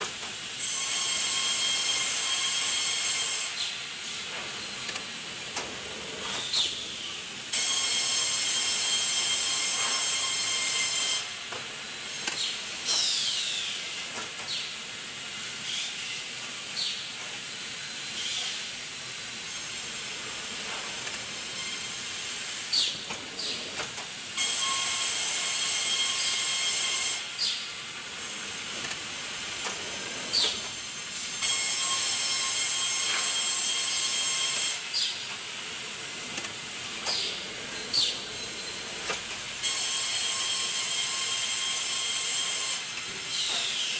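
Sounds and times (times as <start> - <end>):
saw whining through wood: 6.3 - 11.3, 19.4 - 27.6, 28.2 - 35.2, 36.4 - 43.9.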